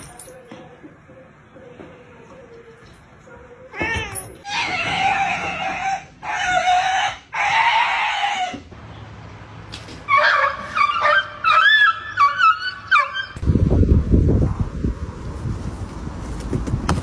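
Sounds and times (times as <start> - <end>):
high-pitched yelps and whines: 10.1 - 13.4.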